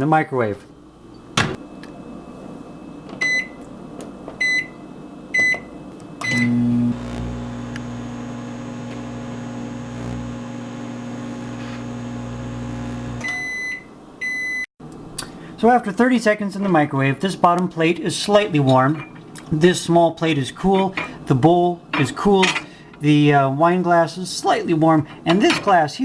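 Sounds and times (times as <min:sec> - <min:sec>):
microwave oven humming: 0:06.2 - 0:13.4
microwave keypad beeps: 0:13.2 - 0:14.6.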